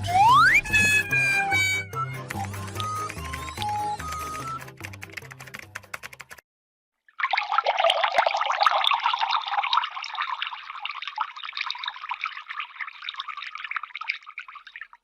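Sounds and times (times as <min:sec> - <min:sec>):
water pouring into a cup: 0:07.1 - 0:15.0.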